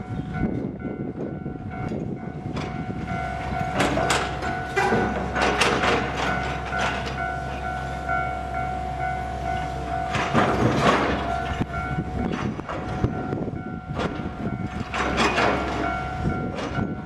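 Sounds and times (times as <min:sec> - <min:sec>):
level crossing bell ringing: 0:00.0 - 0:05.4, 0:06.0 - 0:10.4, 0:11.2 - 0:12.3
train wheels clattering over rail joints: 0:00.4 - 0:08.3, 0:09.4 - 0:17.0.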